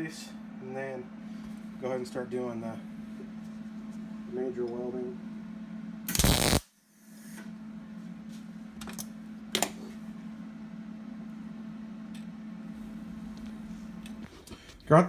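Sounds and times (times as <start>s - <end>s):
steady low hum: 0.0s - 15.0s
welding arc crackle: 6.1s - 6.7s.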